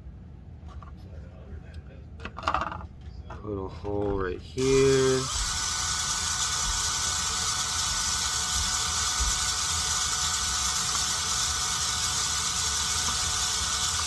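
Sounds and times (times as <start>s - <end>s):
power drill boring through plastic: 4.6s - 14.0s.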